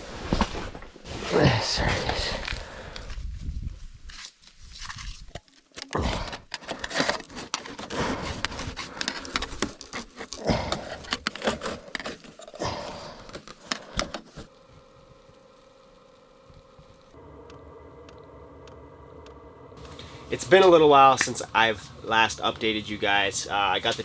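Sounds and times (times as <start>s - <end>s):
faint steady hum: 14.5s - 24.0s.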